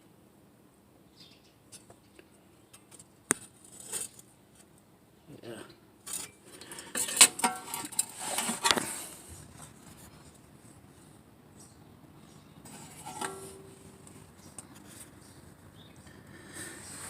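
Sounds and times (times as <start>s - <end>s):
handling and rubbing: 6.1s - 11.1s, 12.6s - 15.7s.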